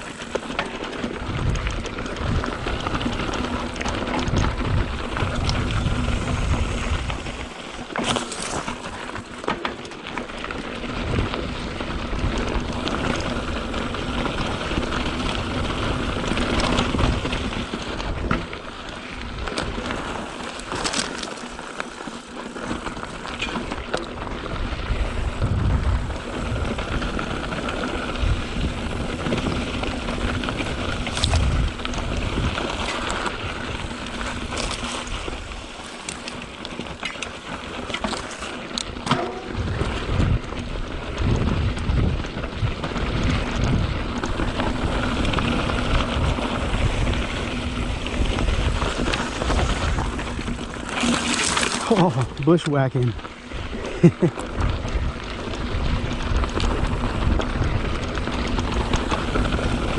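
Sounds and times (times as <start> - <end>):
bike rattling and knocking: 0.0 - 59.9
tyres crunching over dirt: 0.0 - 59.9
wind buffeting microphone: 1.1 - 7.5, 24.4 - 35.7, 38.8 - 51.3.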